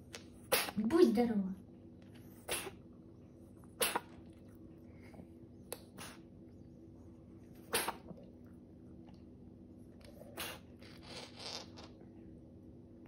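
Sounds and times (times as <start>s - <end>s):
cat sneezing: 0.4s - 0.9s, 2.3s - 2.8s, 3.7s - 4.3s, 7.6s - 8.3s, 10.3s - 11.9s.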